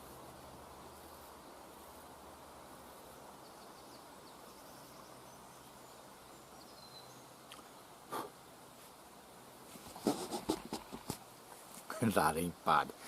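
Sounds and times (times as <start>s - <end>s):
faint steady hiss: 0.0s - 13.0s
faint high bird chirps: 3.4s - 7.8s.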